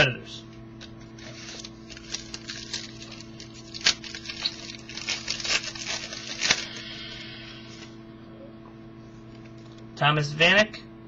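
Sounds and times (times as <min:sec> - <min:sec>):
steady electrical hum: 0:00.0 - 0:11.0
trading cards clicking and rustling: 0:01.2 - 0:06.9.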